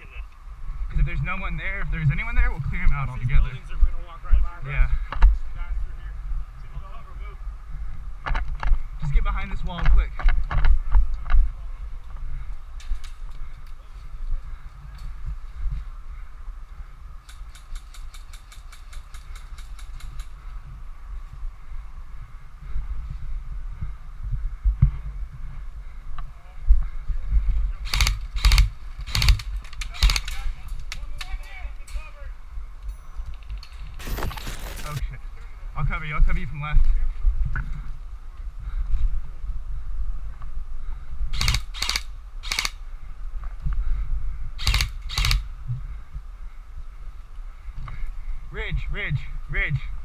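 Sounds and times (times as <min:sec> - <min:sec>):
airsoft gun firing bursts: 0:27.8 - 0:30.4
gear movement: 0:33.3 - 0:35.1.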